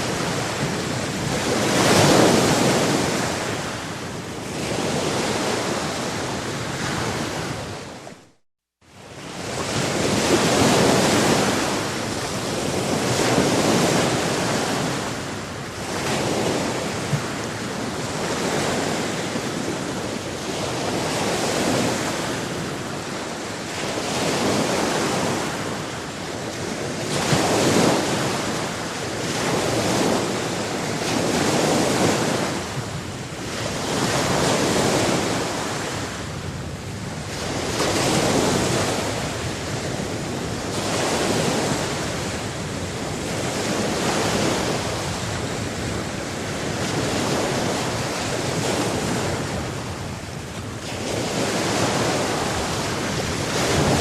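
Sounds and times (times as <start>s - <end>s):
sea waves breaking on shore: 0.0s - 54.0s.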